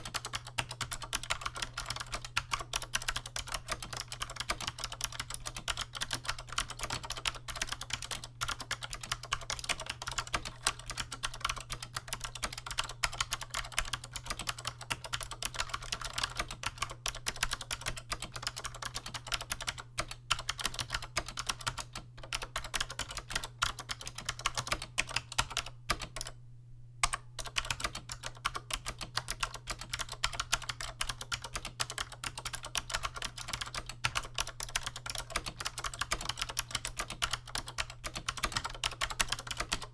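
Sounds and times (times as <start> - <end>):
fast typing on clicky keyboard: 0.0 - 26.3, 27.0 - 39.9.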